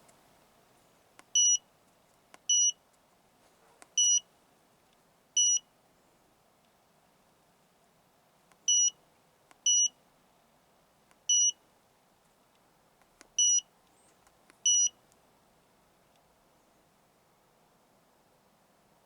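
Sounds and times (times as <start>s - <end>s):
short high beeps: 14.7s - 14.9s.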